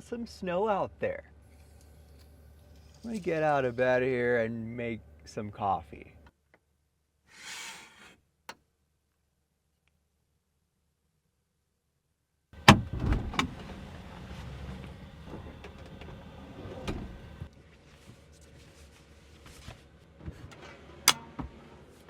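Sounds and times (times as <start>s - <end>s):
sliding door rumbling: 12.6s - 17.5s
door latch clicks: 21.1s - 21.4s.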